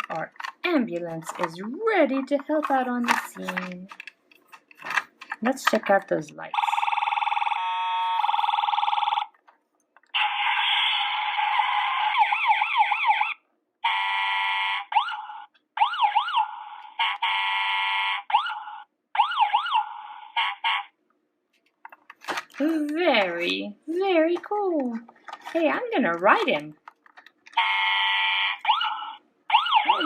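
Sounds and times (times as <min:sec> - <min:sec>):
toy siren sound effects: 0:06.5 - 0:09.3, 0:10.1 - 0:21.0, 0:27.6 - 0:30.0.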